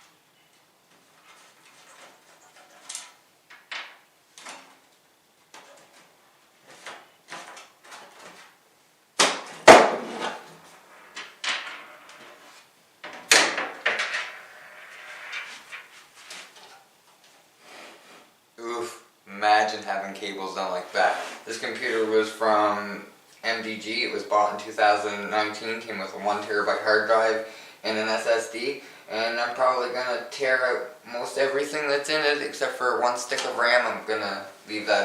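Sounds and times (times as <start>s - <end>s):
loud thuds: 9.2s - 10.4s.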